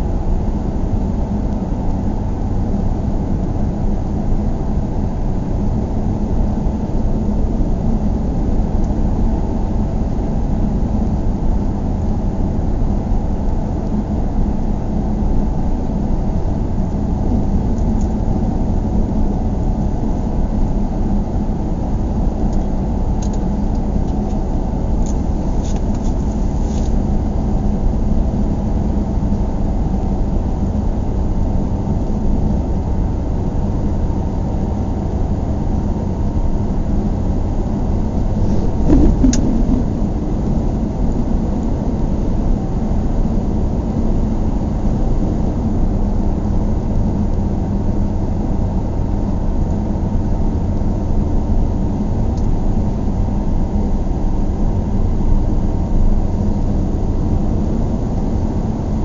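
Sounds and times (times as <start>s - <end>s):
engine and tyre rumble inside car: 0.0s - 59.0s
brief knock: 38.5s - 39.9s.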